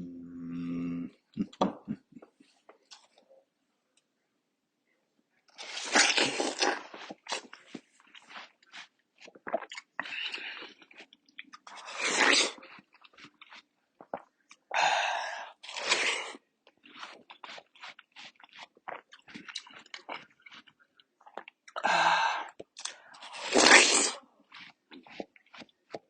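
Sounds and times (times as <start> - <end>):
person chewing watermelon: 5.5 - 14.7, 15.4 - 26.0.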